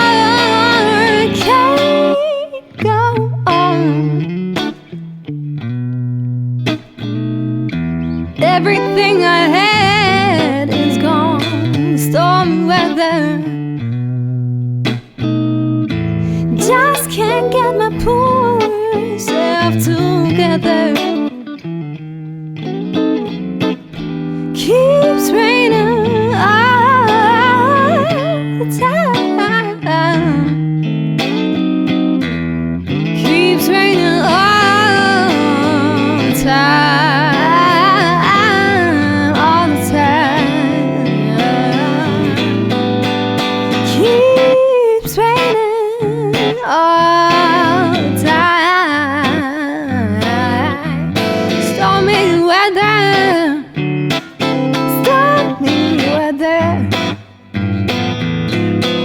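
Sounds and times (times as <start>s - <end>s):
woman singing with vibrato: 0.0s - 4.3s, 8.4s - 13.6s, 16.4s - 21.4s, 24.4s - 30.6s, 33.1s - 57.4s
guitar: 0.0s - 59.0s.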